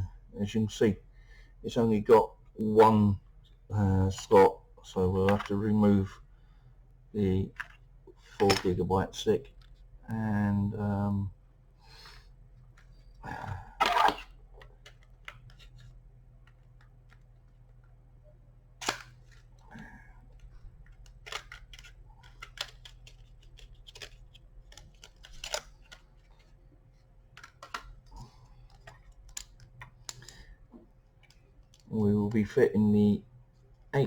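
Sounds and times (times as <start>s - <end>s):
memory stick clips clicking: 18.8s - 19.1s, 20.9s - 26.0s, 28.6s - 30.4s.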